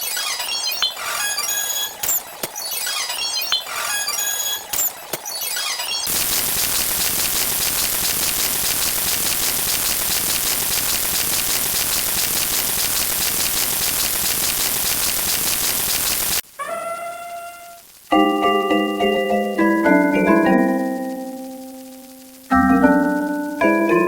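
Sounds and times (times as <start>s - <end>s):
crackling hiss: 6.1s - 24.0s.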